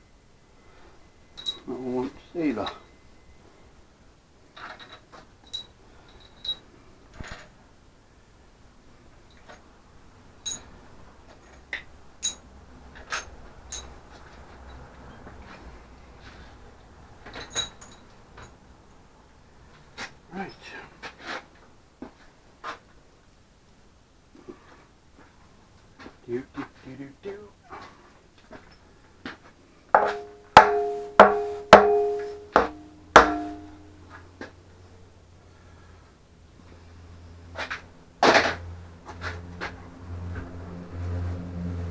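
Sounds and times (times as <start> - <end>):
metallic clinks and taps: 1.4 - 1.7, 4.6 - 6.6, 10.4 - 10.7, 11.3 - 15.6, 17.2 - 18.6, 30.0 - 33.9
ringing blows on metal: 30.0 - 34.1.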